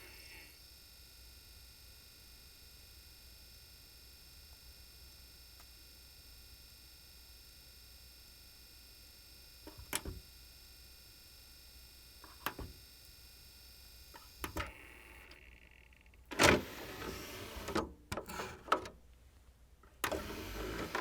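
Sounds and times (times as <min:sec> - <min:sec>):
disc tray motor: 0:00.0 - 0:00.6, 0:14.2 - 0:19.0, 0:20.0 - 0:21.0
plastic clicks of disc tray: 0:14.2 - 0:14.7, 0:16.3 - 0:19.0.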